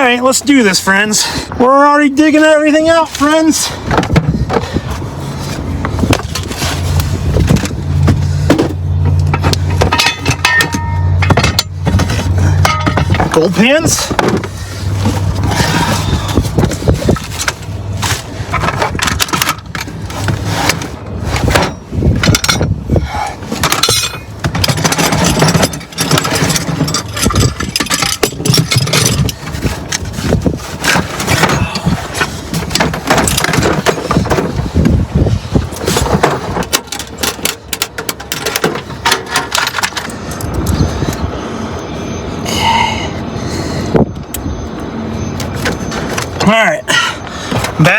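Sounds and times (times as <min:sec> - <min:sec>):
gear clattering and rattling: 0:02.3 - 0:41.4.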